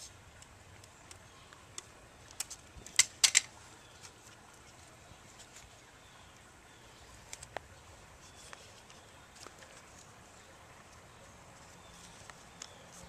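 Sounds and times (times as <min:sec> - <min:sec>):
paper and tape crackling: 0:08.2 - 0:13.0.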